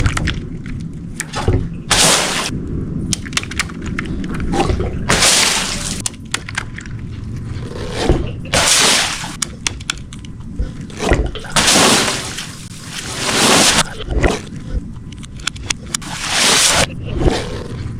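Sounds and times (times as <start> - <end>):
water balloons bursting and splashing: 1.4 - 2.5, 4.8 - 6.0, 8.4 - 9.4, 11.1 - 14.3, 16.0 - 17.0.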